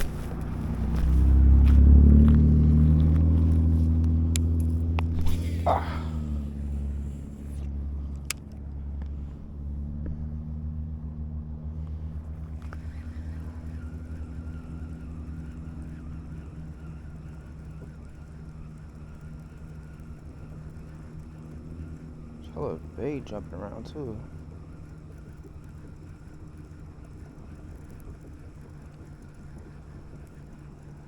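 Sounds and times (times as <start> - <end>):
motor rumbling: 0.0 - 31.0
sharp clicks: 3.0 - 5.7, 6.6 - 9.2.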